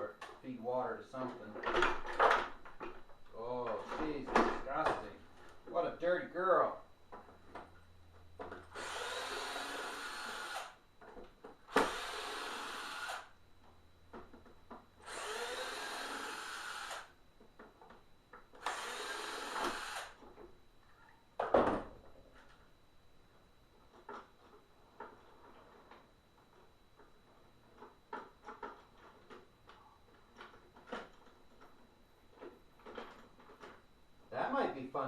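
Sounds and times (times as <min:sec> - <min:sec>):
power drill running: 0:08.7 - 0:10.8, 0:11.7 - 0:13.3, 0:15.0 - 0:17.1, 0:18.6 - 0:20.2.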